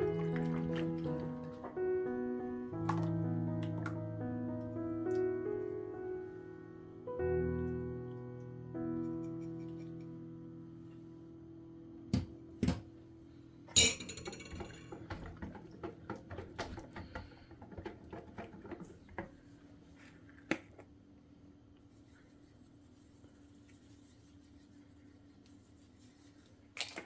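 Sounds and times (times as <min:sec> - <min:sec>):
dishes and utensils clattering: 0:13.7 - 0:18.9
ringing clink: 0:13.8 - 0:14.8.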